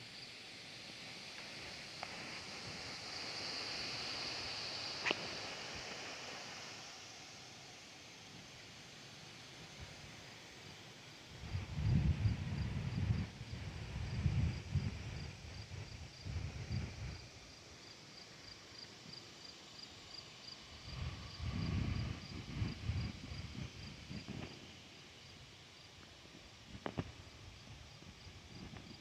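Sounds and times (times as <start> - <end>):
cricket chirping: 9.4 - 29.0.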